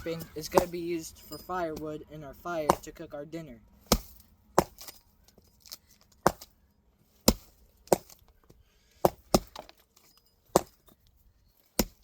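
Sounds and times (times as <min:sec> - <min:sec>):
axe chopping wood: 0:00.0 - 0:00.8, 0:02.6 - 0:03.0, 0:03.8 - 0:05.0, 0:05.7 - 0:06.6, 0:07.2 - 0:08.4, 0:09.0 - 0:09.8, 0:10.5 - 0:10.8, 0:11.8 - 0:12.0.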